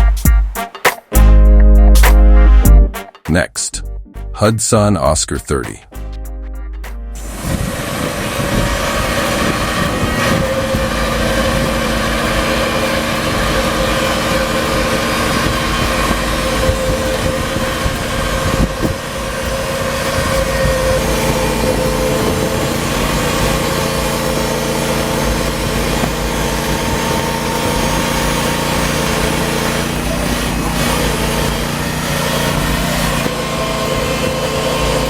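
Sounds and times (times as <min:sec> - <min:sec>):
small petrol engine running: 0:07.2 - 0:35.0.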